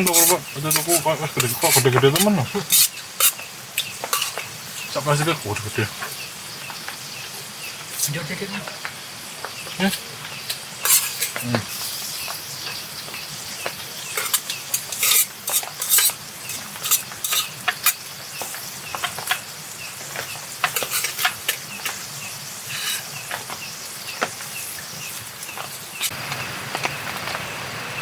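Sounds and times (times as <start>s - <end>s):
utensil scraping a pan: 0.0s - 6.3s, 9.9s - 12.2s, 14.0s - 19.5s, 20.1s - 26.2s
meat sizzling: 0.0s - 28.0s.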